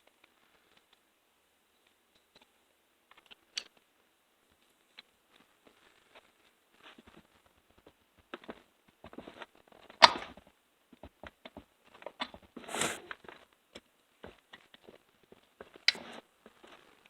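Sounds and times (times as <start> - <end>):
screwdriver scraping rasp: 12.6 - 13.0.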